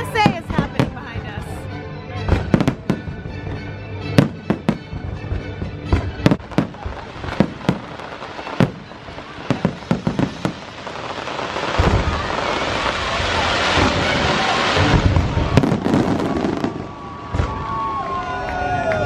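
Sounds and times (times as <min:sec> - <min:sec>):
music through loudspeakers: 0:00.0 - 0:10.3
fireworks bangs: 0:02.2 - 0:18.6.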